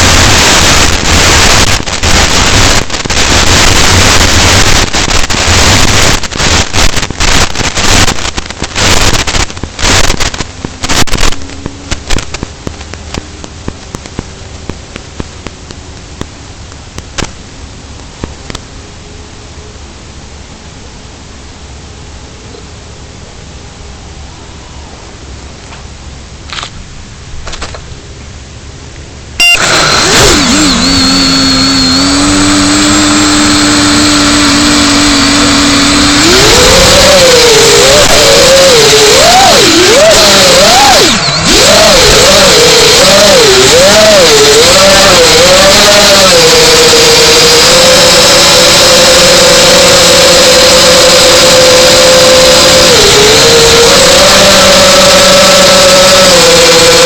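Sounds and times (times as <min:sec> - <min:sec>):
model airplane motor running: 0:00.0 - 0:14.3, 0:29.4 - 0:57.0.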